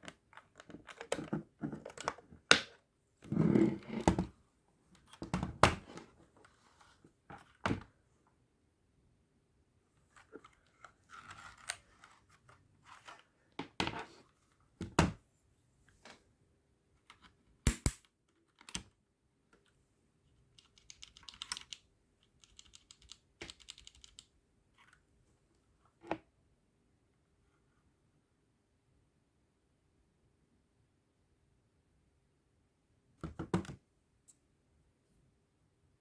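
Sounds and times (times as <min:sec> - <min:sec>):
mechanical keyboard typing: 0:20.6 - 0:21.8, 0:22.4 - 0:24.3.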